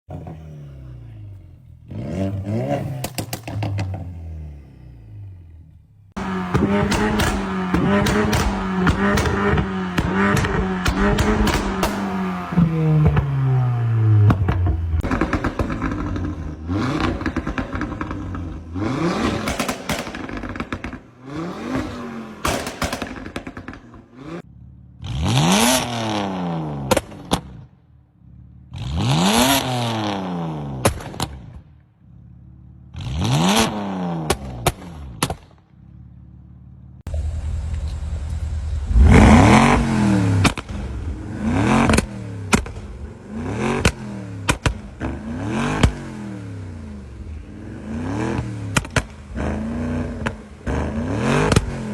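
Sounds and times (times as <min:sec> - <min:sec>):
car engine revving: 0:00.1 - 0:35.9, 0:36.8 - 0:51.9
exhaust crackles and pops: 0:02.0 - 0:04.3, 0:05.5 - 0:24.5, 0:37.0 - 0:46.2, 0:47.0 - 0:51.9.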